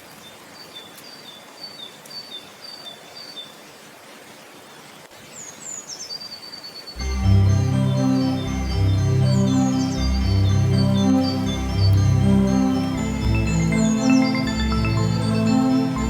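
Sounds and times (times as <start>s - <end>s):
bird chirping: 5.8s - 16.0s
organ-like keyboard music: 7.0s - 16.0s
waterfall rushing: 7.0s - 16.0s.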